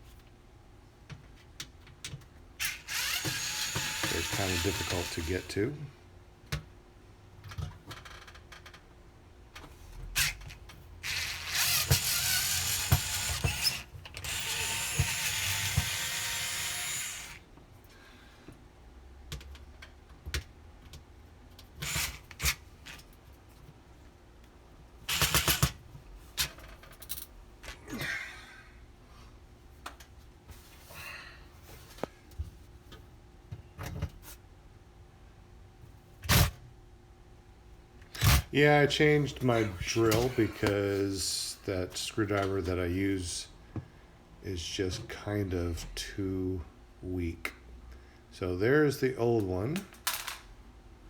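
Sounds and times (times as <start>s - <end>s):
cordless power driver running: 2.6s - 5.6s, 11.0s - 17.4s.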